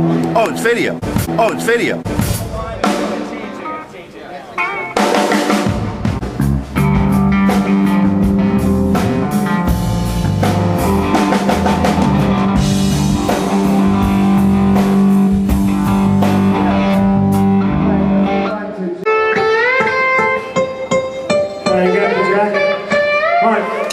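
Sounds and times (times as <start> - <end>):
drum kit: 0.0 - 3.6, 4.6 - 18.4
guitars: 0.0 - 23.9.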